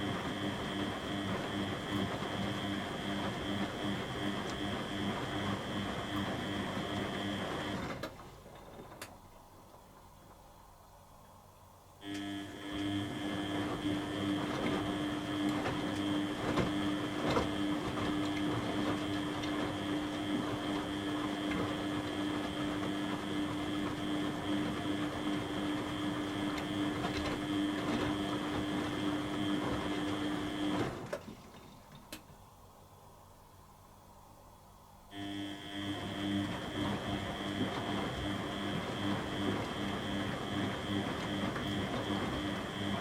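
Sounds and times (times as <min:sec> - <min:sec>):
washing machine drum tumbling: 0:13.0 - 0:32.1, 0:35.7 - 0:43.0.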